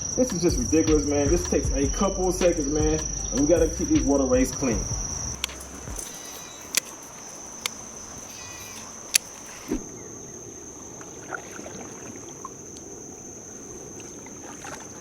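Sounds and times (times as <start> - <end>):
insects droning: 0.0 - 15.0
sharp clicks: 2.4 - 9.8.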